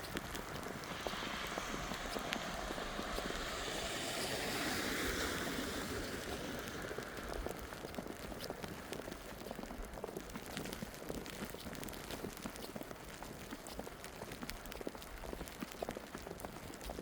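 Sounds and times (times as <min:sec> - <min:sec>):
steady hiss: 0:00.0 - 0:07.8
rushing noise: 0:00.0 - 0:08.4
footsteps crunching in snow: 0:00.0 - 0:13.6.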